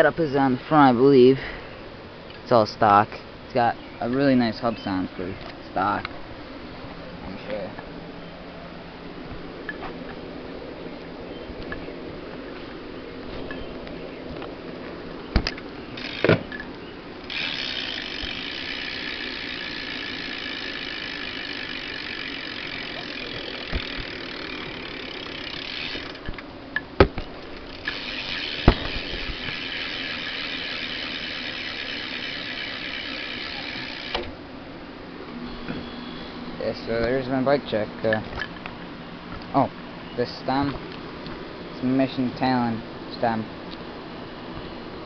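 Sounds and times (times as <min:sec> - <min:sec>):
bike hub freewheeling ratchet buzz: 0:15.9 - 0:26.3, 0:27.6 - 0:34.3.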